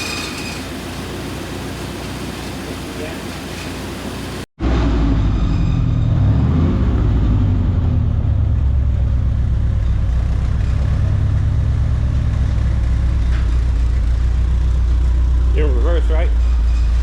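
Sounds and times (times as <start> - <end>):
pickup engine idling: 0.0 - 4.5.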